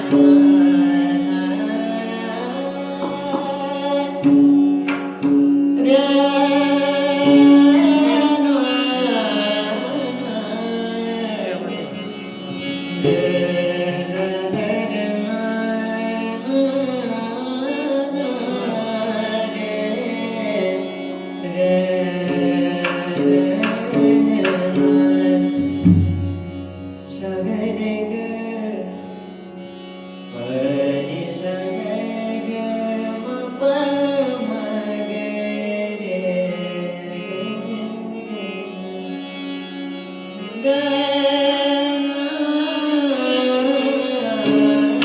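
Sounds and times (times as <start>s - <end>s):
man singing devotional song: 0.0s - 45.0s
hand drum strokes: 4.2s - 5.7s
steady drone: 18.5s - 31.5s.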